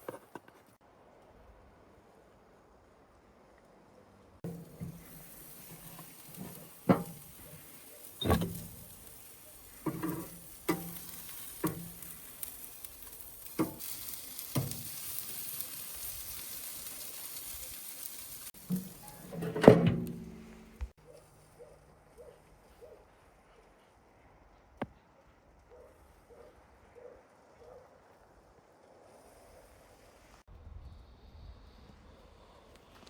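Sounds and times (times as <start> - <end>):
food sizzling over a fire: 4.4 - 19.4.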